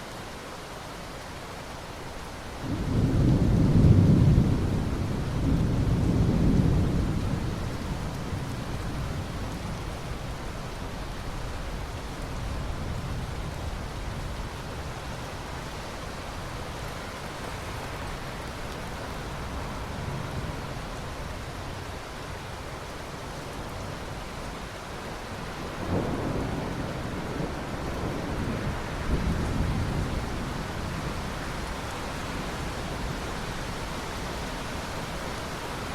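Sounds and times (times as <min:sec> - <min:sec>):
heavy rain: 0:00.0 - 0:35.9
thunder rumbling: 0:02.6 - 0:10.2, 0:25.7 - 0:33.6.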